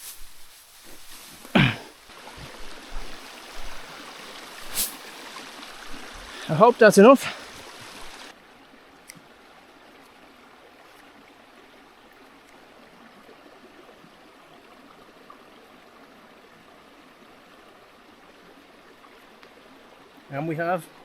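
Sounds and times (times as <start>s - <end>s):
river water running: 0.0s - 21.0s.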